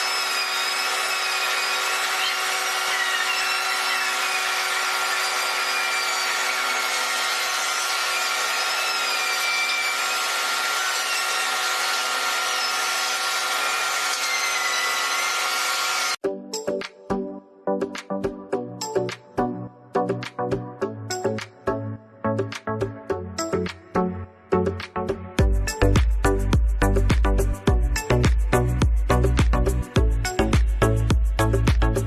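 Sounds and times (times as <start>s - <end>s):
power tool cutting wood: 0.0s - 16.2s
music: 16.2s - 32.0s.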